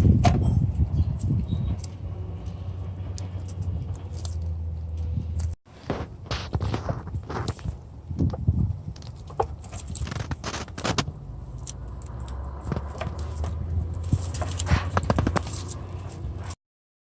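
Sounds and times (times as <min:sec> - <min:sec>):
car engine humming: 0:11.0 - 0:16.6.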